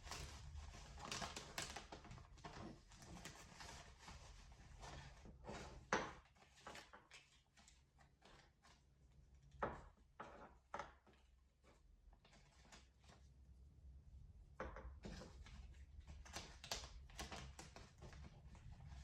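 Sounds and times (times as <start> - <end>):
packing rustles: 0.0 - 4.1.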